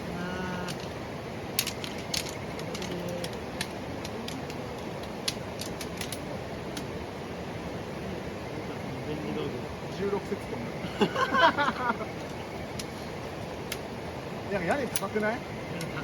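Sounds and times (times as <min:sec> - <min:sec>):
steady background hiss: 0:00.0 - 0:16.0
camping gear clicking and tapping: 0:00.6 - 0:06.9, 0:14.7 - 0:16.0.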